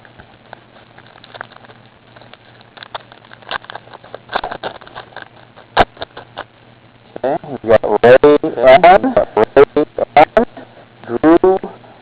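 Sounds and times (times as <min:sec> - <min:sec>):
cards and wrapper rustling: 0:00.0 - 0:06.5.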